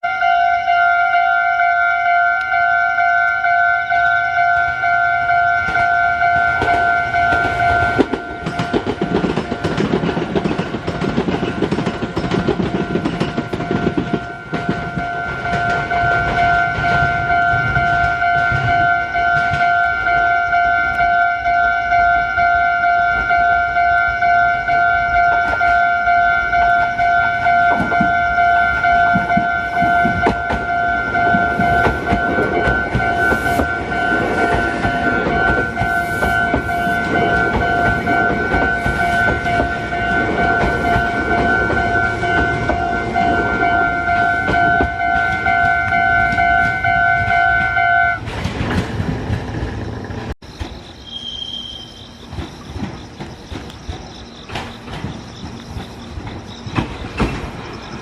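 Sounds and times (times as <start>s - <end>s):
level crossing bell ringing: 0.0s - 8.8s, 12.9s - 48.2s
train wheels clacking over rails: 4.0s - 22.1s, 24.2s - 58.0s.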